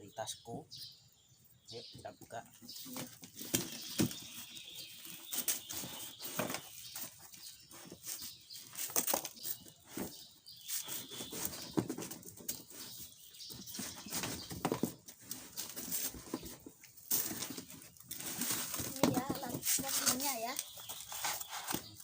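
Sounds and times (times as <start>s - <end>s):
packaging rustling and crackling: 10.8s - 22.0s.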